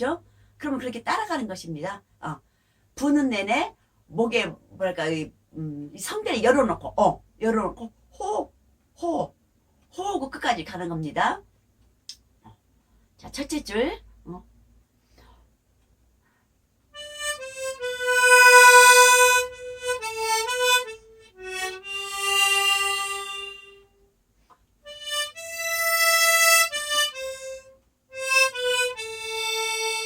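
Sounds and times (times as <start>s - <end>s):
harmonica melody: 16.9s - 24.0s, 24.8s - 30.0s.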